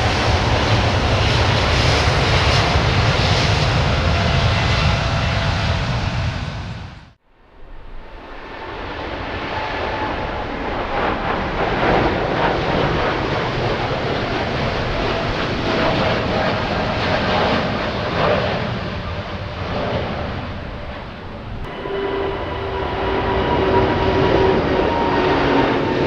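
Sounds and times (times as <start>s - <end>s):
jet engine rushing roar: 0.0s - 7.2s, 7.8s - 26.0s
faint held tone: 21.6s - 25.6s.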